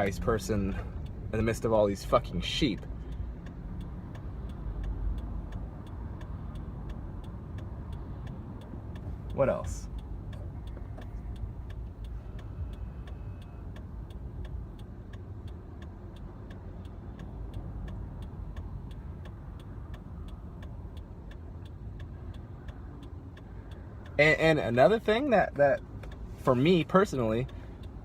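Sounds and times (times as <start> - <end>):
car road and engine noise: 0.0 - 28.0
regular light ticking: 0.0 - 28.0.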